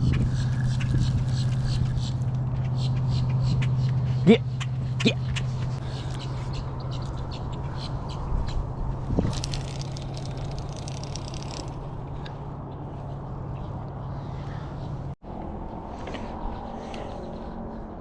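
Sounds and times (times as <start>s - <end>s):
birds chirping: 0.0s - 8.7s
steady low hum: 0.0s - 18.0s.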